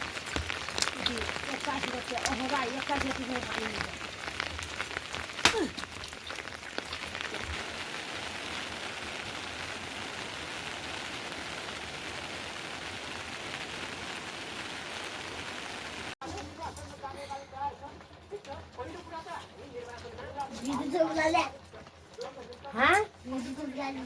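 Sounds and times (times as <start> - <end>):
heavy rain falling: 0.0 - 24.0.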